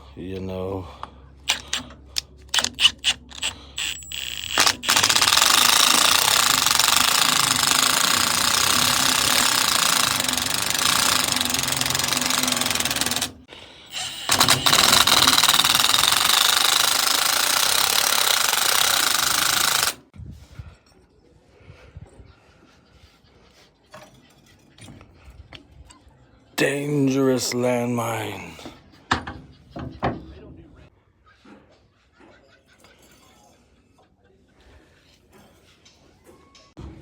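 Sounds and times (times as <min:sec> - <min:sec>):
impact wrench hammering: 0:01.5 - 0:20.0.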